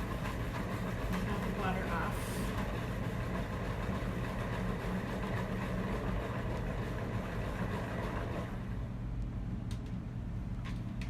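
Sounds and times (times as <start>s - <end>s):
salad spinner spinning: 0.0s - 8.7s.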